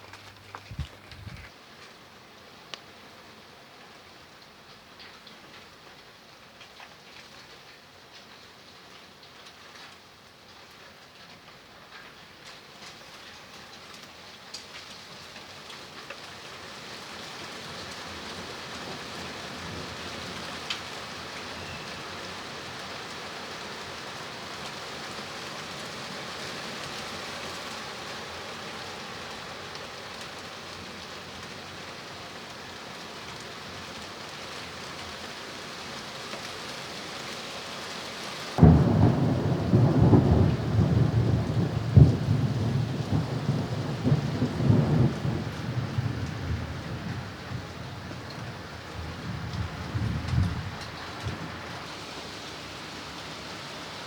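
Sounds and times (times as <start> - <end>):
steady rain falling: 0.0 - 54.0
thunderclap rumbling: 38.6 - 51.7.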